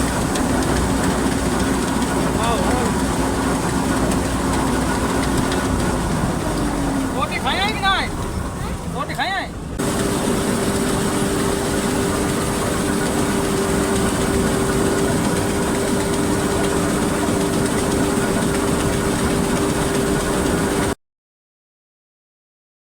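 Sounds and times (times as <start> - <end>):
diesel machinery running: 0.0 - 21.0.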